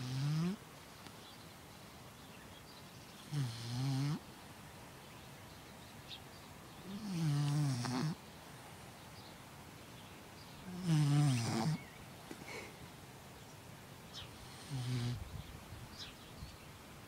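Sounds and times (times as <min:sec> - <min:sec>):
puppy snoring: 0:00.0 - 0:00.6, 0:03.2 - 0:04.2, 0:06.8 - 0:08.2, 0:10.7 - 0:11.9, 0:14.4 - 0:15.2.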